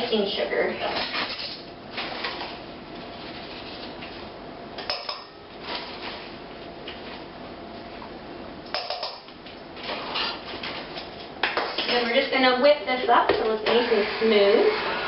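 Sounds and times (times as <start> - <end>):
utensils clinking against bowl: 4.8 - 5.4.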